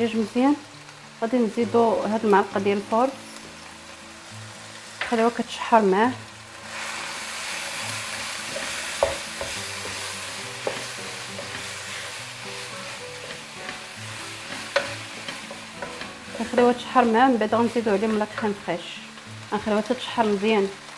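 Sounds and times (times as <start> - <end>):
meat sizzling in a pan: 0.0 - 20.9
spoon knocking against pan: 8.5 - 12.1, 13.3 - 16.7.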